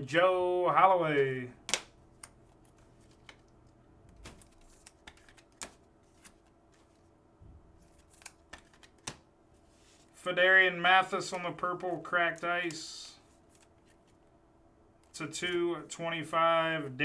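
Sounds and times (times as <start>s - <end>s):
trading cards clicking and flicking: 1.1s - 7.0s, 7.8s - 9.3s, 11.1s - 14.2s.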